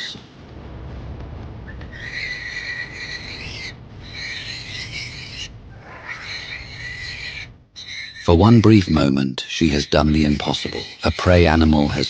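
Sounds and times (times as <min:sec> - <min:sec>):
low steady rumble: 0:00.2 - 0:09.2
high-pitched animal calls: 0:01.9 - 0:09.0.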